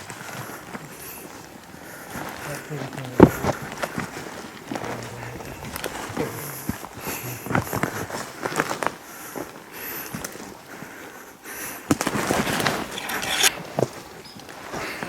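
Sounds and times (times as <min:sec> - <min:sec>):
rustling: 0:00.0 - 0:10.6, 0:11.7 - 0:15.0
crackling and snapping: 0:00.0 - 0:15.0.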